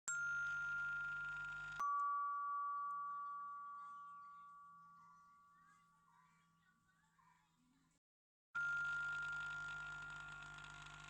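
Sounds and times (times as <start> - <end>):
electronic doorbell chime: 0.1 - 6.1, 8.6 - 11.0.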